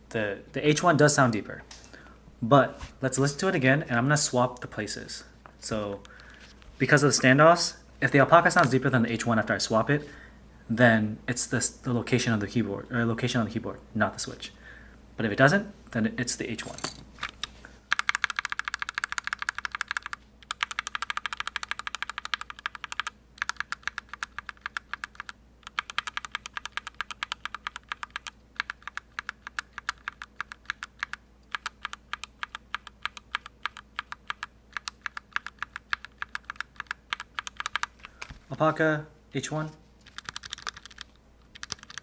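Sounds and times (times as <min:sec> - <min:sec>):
mechanical keyboard keys pressed rapidly: 0:17.9 - 0:38.0, 0:40.0 - 0:42.0.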